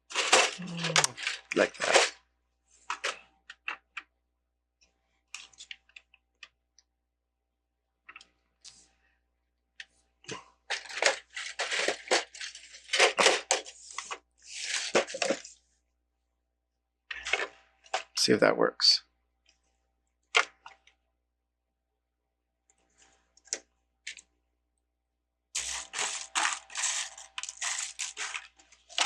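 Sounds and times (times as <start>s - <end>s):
plastic bricks clicking and clattering: 10.7s - 14.2s.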